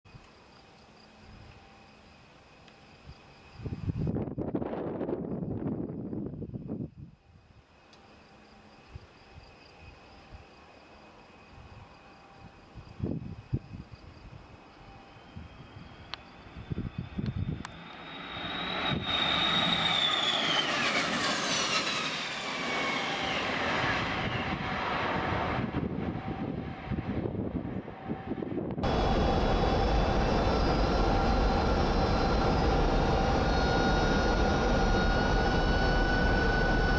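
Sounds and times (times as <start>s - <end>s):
jet airliner passing low: 3.1s - 36.9s
steady loud jet noise: 11.2s - 36.9s.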